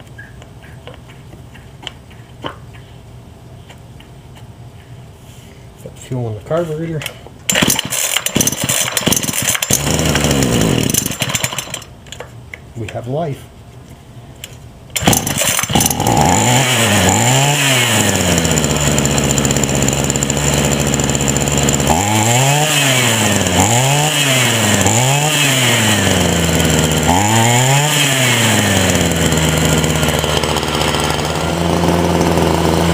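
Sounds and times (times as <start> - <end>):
string trimmer engine revving: 7.5 - 11.9, 15.0 - 32.9.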